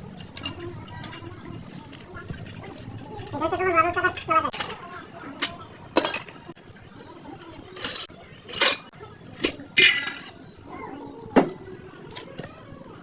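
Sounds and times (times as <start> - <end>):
metal tools clinking: 5.4 - 6.4, 7.6 - 10.5.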